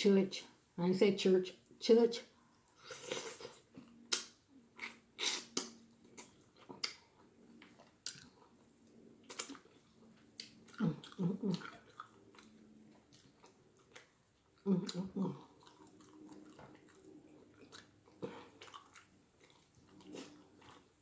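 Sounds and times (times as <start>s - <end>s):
wet mouth clicks: 3.2s - 7.1s, 9.3s - 9.6s
person chewing meat: 3.5s - 21.0s.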